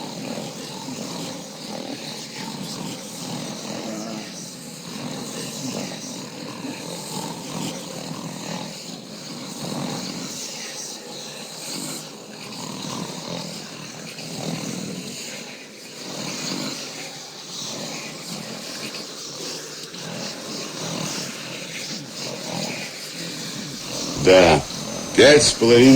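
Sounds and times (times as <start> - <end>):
men snoring: 23.8 - 25.9.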